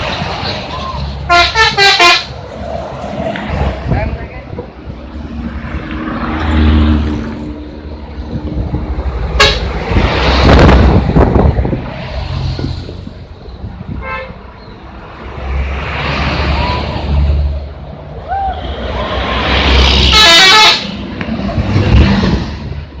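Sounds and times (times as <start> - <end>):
bus engine running: 0.0 - 23.0
warbling multi-tone horn blast: 20.0 - 21.0.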